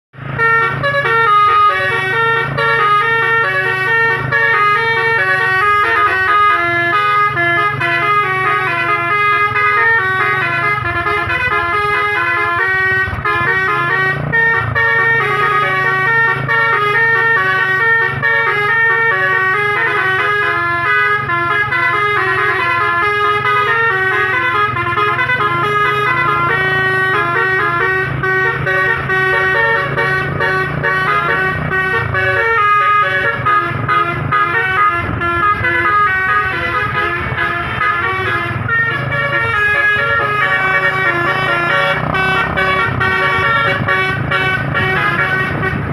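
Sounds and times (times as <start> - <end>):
multi-tone vehicle horn melody: 0.2 - 45.9.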